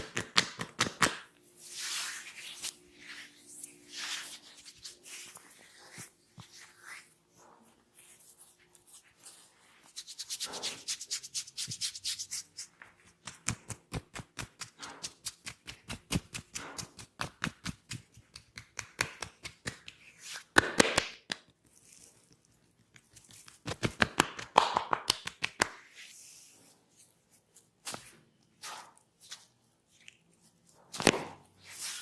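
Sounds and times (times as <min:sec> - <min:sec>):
hands tapping on a head: 0:00.0 - 0:01.2, 0:15.5 - 0:19.9, 0:23.7 - 0:25.8.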